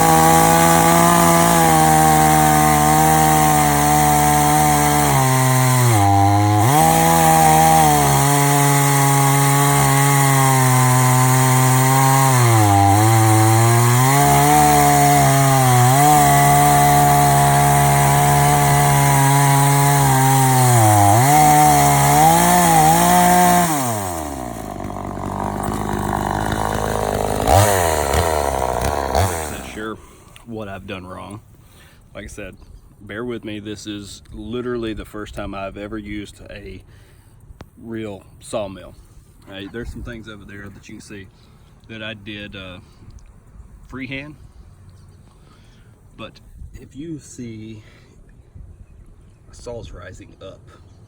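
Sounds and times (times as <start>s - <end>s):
chainsaw cutting a log: 0.0s - 30.4s.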